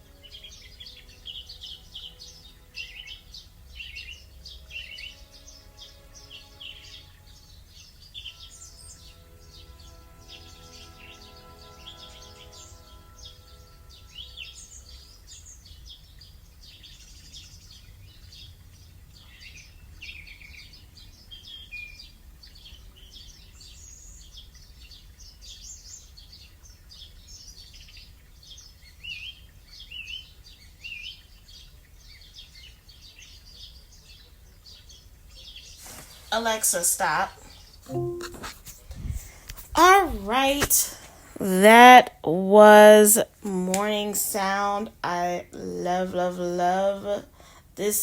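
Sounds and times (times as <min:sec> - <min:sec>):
songbirds chirping and trilling: 0:00.0 - 0:48.0
soft sustained tone: 0:37.9 - 0:38.7.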